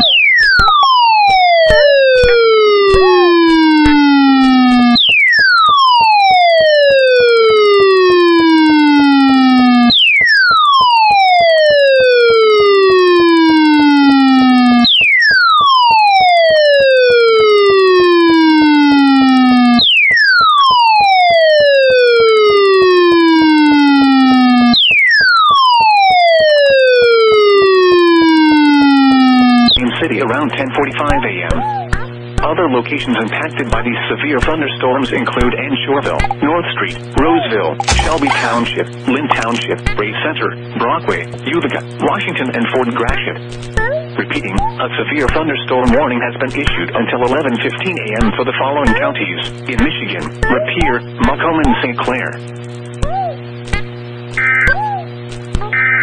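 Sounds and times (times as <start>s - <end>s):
electronic alert tone sliding down: 0.0s - 29.7s, 37.8s - 38.7s.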